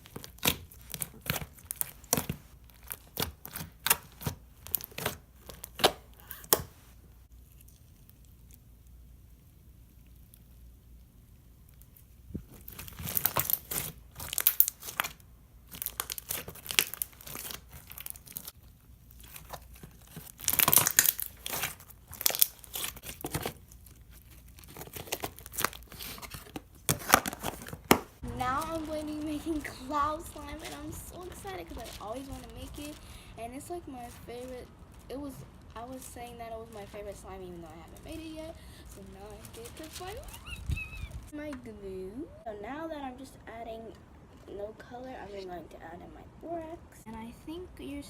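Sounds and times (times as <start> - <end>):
slime crackling and clicking: 19.2 - 26.0.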